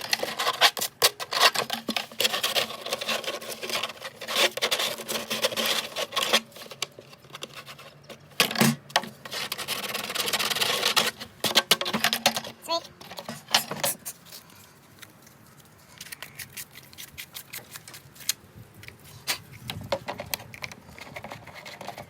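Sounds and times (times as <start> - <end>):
scraping on hard plastic: 0.0 - 14.5, 19.2 - 22.0.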